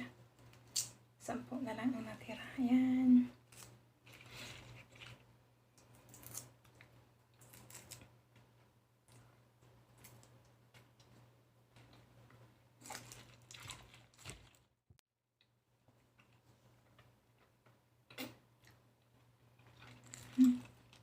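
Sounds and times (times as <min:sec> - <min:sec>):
fruit being peeled and chewed: 0:03.4 - 0:14.7, 0:15.8 - 0:21.0.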